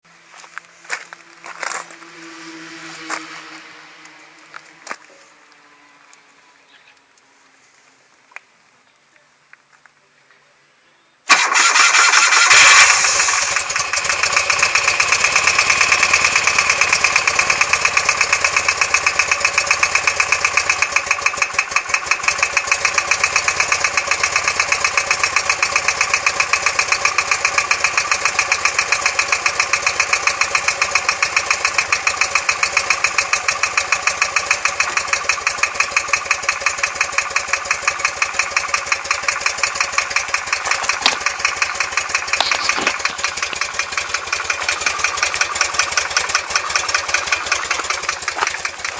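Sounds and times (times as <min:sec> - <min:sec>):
fast ticking engine knock: 0:11.3 - 0:48.9
motorcycle engine idling: 0:12.9 - 0:48.9.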